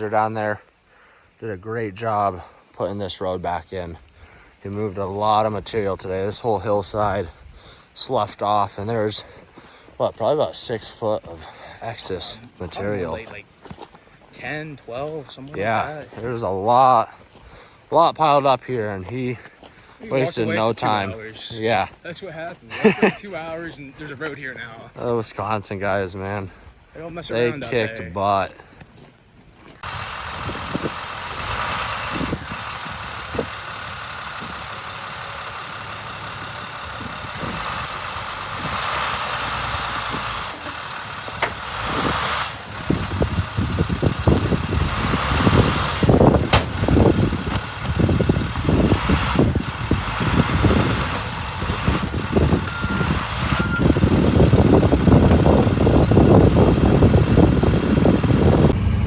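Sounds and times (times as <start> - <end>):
vehicle engine running: 29.7 - 59.0
low rumble: 57.8 - 59.0.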